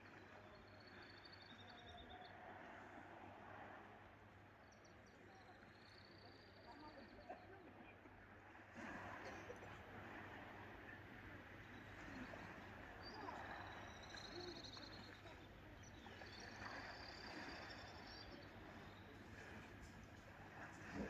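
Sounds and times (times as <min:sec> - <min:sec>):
sea and breeze: 0:08.2 - 0:21.0.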